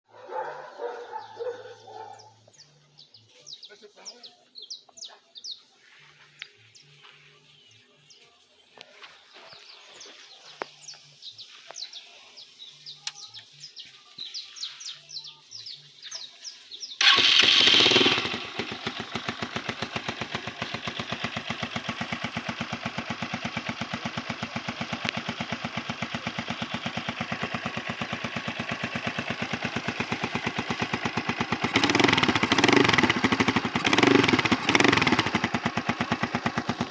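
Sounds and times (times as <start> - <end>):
faint birds chirping: 0.1 - 36.9
motorcycle engine idling and revving: 0.3 - 3.6, 4.7 - 36.9.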